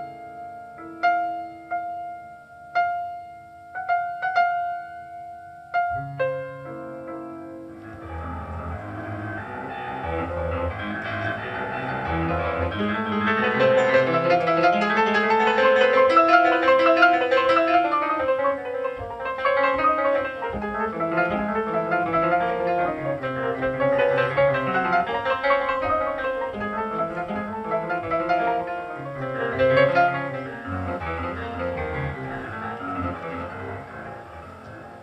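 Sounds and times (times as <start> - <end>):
rapid piano notes: 0.0 - 35.0
sustained orchestral strings: 8.0 - 35.0.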